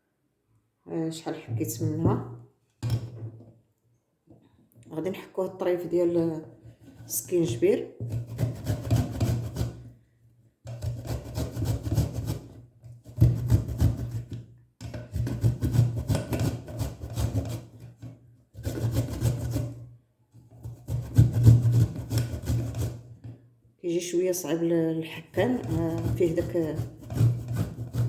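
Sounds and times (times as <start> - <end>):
ginger grated on a grater: 6.9 - 9.8, 10.7 - 14.3, 15.1 - 18.0, 18.6 - 19.8, 20.6 - 23.1, 25.3 - 28.0.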